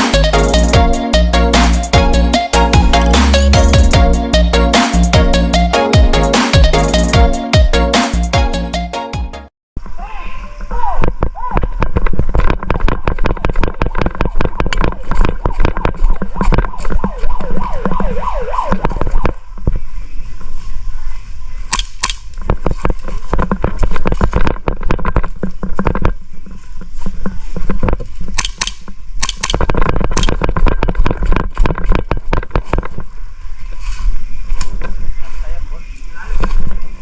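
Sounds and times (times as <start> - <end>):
wavering pitched sound: 0.0 - 9.1.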